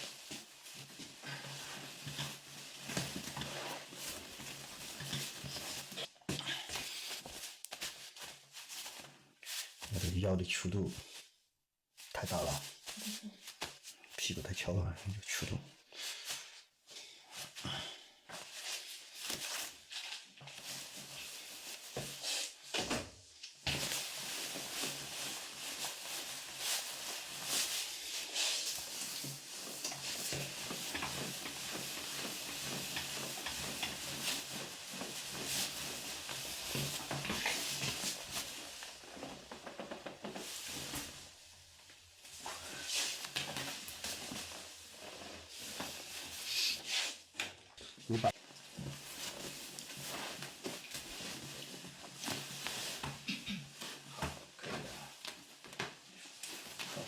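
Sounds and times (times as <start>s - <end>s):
hands rustling over clothing: 0.0s - 10.2s, 12.0s - 14.2s, 23.7s - 47.3s, 48.3s - 57.0s.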